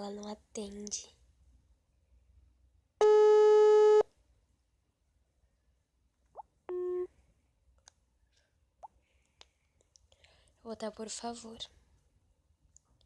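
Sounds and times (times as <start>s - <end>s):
phone ringback beep: 3.0s - 4.0s, 6.7s - 7.1s.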